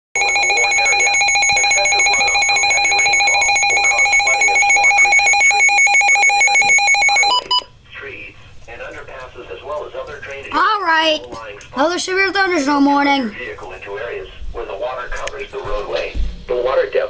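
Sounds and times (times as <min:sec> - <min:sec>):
warbling electronic alert alarm: 0:00.2 - 0:07.7.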